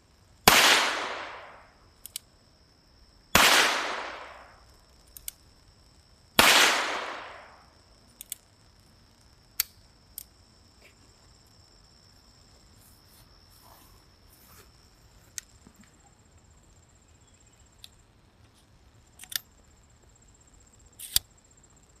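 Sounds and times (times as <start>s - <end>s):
revolver gunshot: 0.5s - 1.6s, 3.4s - 4.5s, 6.4s - 7.6s
faint high-pitched hum: 1.0s - 22.0s
faint clicks: 2.0s - 2.3s, 5.1s - 5.4s, 8.2s - 8.4s.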